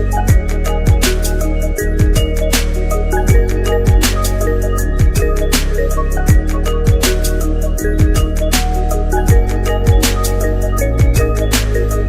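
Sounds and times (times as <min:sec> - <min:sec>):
electronic music with steady beat: 0:00.0 - 0:12.0.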